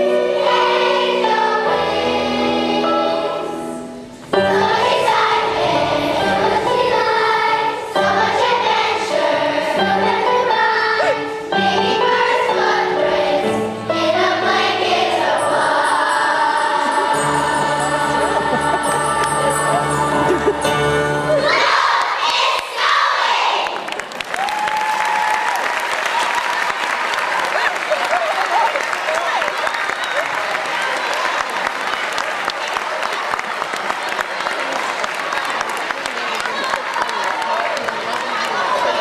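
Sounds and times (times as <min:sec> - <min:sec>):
choir singing with accompaniment: 0:00.0 - 0:23.9.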